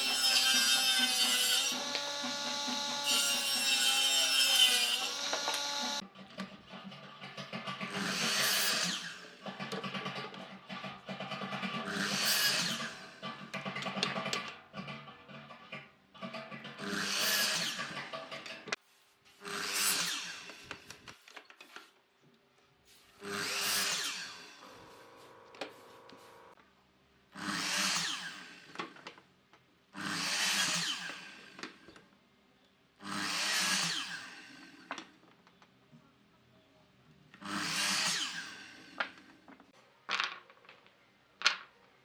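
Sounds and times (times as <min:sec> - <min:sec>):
power tool cutting wood: 0:00.0 - 0:06.0, 0:07.9 - 0:09.4, 0:11.8 - 0:13.1, 0:16.8 - 0:18.2, 0:19.4 - 0:20.7, 0:23.2 - 0:26.6, 0:27.4 - 0:29.0, 0:30.0 - 0:31.7, 0:33.0 - 0:35.0, 0:37.4 - 0:39.2.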